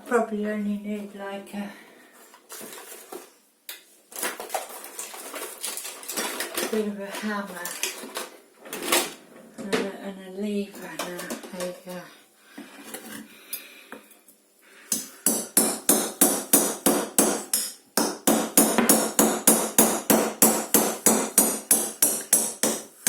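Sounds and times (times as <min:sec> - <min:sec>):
hammer striking frozen food: 0:14.9 - 0:23.0.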